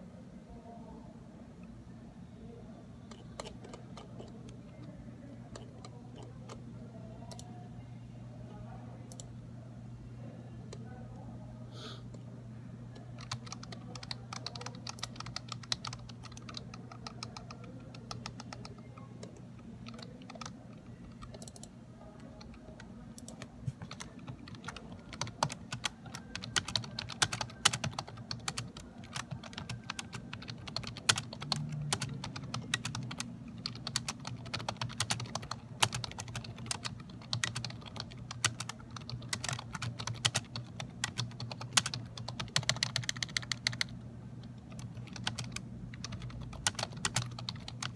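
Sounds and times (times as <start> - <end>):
low steady hum: 0.0 - 47.9
keyboard typing clicks: 7.3 - 7.5, 9.1 - 9.3, 13.2 - 21.7, 23.2 - 43.9, 44.5 - 47.9.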